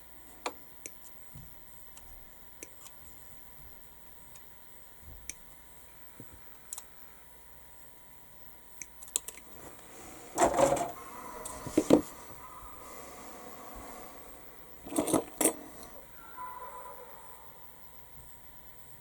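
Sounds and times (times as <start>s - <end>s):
clattering rustle: 9.6s - 12.2s
plastic parts clicking and tapping: 10.4s - 11.0s.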